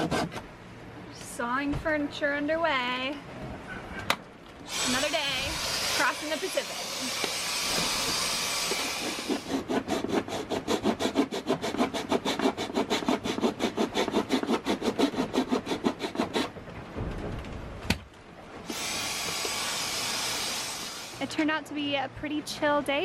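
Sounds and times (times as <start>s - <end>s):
hand saw cutting wood: 0.0s - 0.4s, 4.7s - 16.5s, 18.7s - 21.3s
steady hiss: 4.7s - 9.3s, 18.6s - 21.3s.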